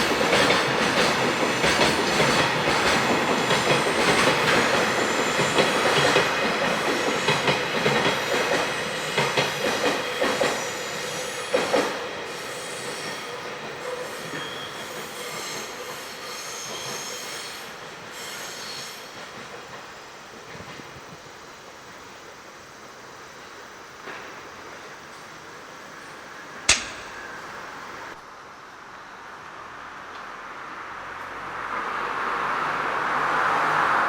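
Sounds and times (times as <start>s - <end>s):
freight train wheels clattering: 0.0s - 10.7s, 26.7s - 28.2s
train wheel squeal: 0.0s - 21.1s.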